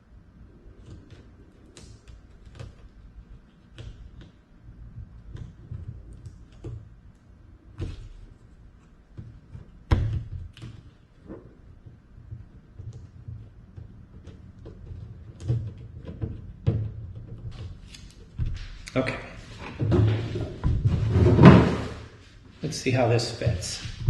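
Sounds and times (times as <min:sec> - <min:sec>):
knocks and thuds on wooden kayak: 0:09.2 - 0:17.6, 0:19.7 - 0:22.0.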